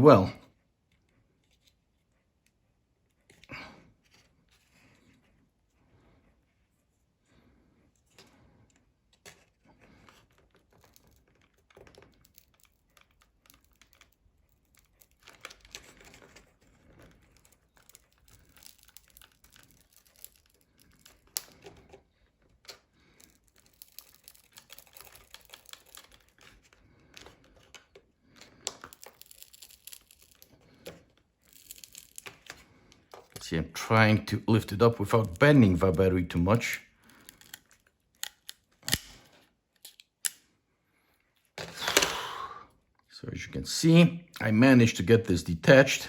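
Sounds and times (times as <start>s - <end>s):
pry tool clicking and scraping: 37.2s - 39.2s.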